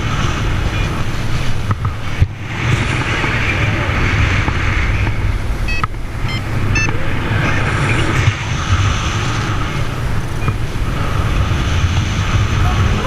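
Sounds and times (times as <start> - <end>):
wind buffeting microphone: 0.0 - 13.0
short high beeps: 5.7 - 7.1.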